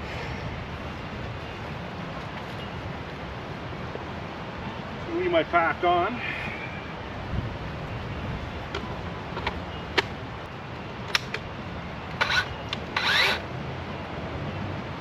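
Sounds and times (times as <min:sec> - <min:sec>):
sharp clicks: 0:11.1 - 0:11.4.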